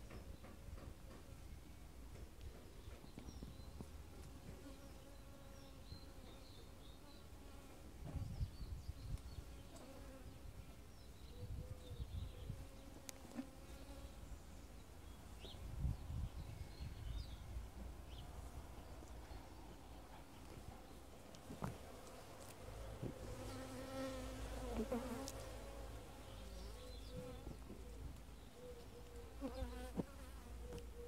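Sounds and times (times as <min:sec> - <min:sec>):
bees buzzing: 0:22.7 - 0:27.5.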